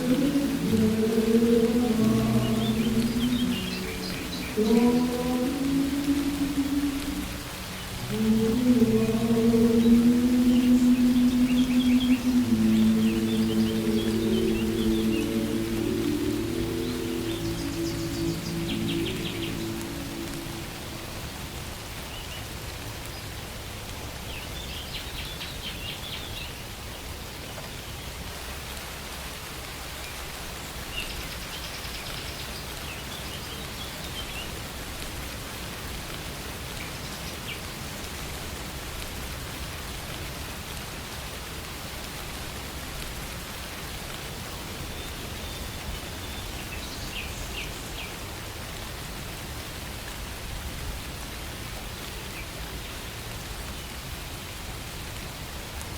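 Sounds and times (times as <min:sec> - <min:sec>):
birds chirping: 0:00.0 - 0:21.1
steady rain falling: 0:00.0 - 0:55.9.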